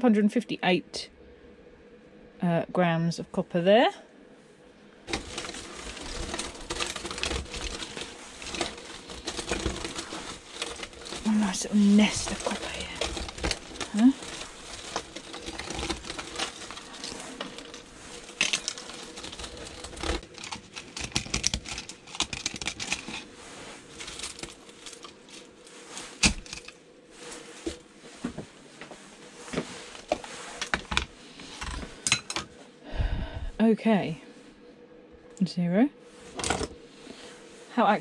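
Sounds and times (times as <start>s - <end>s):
copper wire rustling and crinkling: 5.0s - 32.7s, 36.0s - 37.8s.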